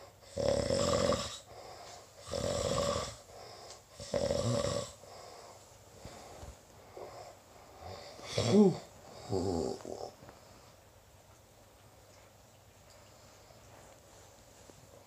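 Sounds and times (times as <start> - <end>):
person snoring: 0.2 - 1.6, 2.2 - 3.2, 4.0 - 5.0, 7.8 - 10.2.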